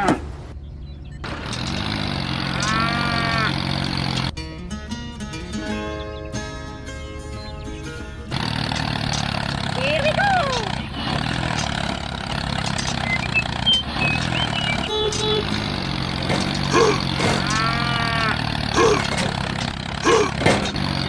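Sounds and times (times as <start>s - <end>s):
tractor engine running: 0.0s - 21.0s
short calls: 8.3s - 21.0s.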